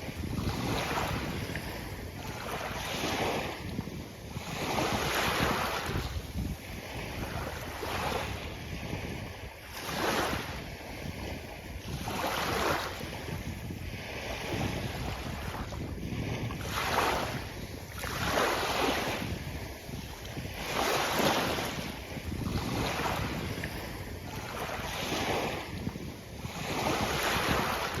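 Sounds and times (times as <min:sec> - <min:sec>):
sea waves breaking on beach: 0:00.0 - 0:28.0.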